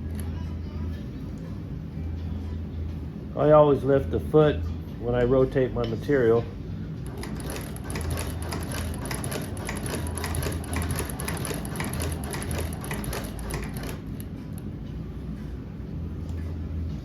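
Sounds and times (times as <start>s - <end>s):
sewing machine stitching leather: 7.1s - 14.3s.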